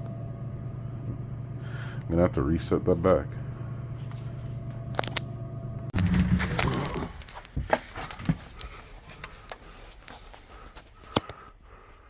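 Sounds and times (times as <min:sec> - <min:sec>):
vending machine humming: 0:00.0 - 0:09.8
loud rumbling clatter: 0:05.9 - 0:07.4.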